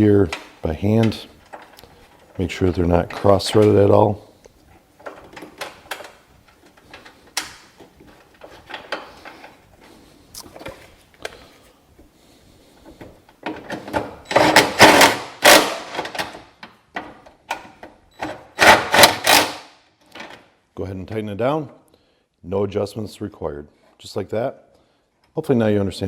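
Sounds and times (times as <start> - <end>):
impact wrench bursts: 14.3 - 16.2, 18.5 - 19.8.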